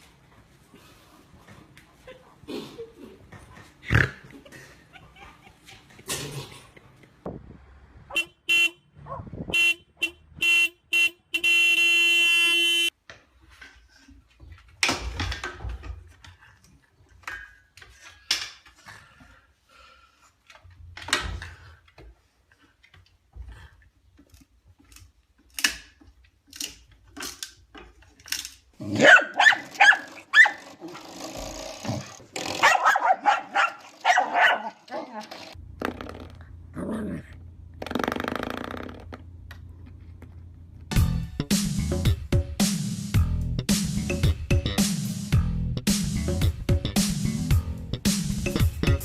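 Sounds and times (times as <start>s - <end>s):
horn honking: 8.1s - 12.9s
dog barking: 9.0s - 9.4s, 29.0s - 30.6s, 32.6s - 35.2s.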